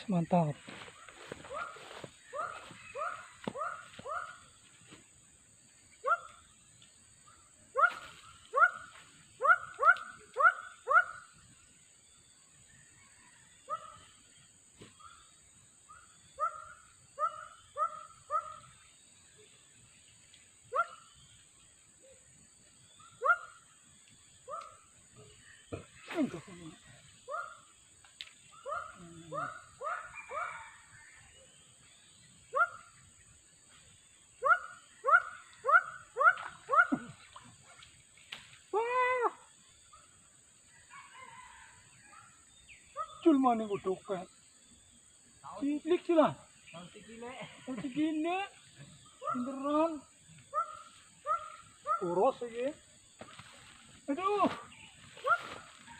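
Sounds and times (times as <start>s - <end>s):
animal yelping calls: 34.4s - 37.2s, 50.5s - 52.1s.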